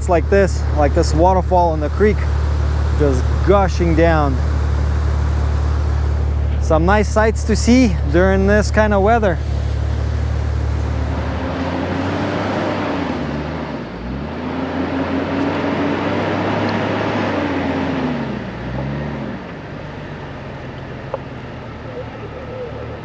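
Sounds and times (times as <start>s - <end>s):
car engine revving: 0.0s - 23.0s.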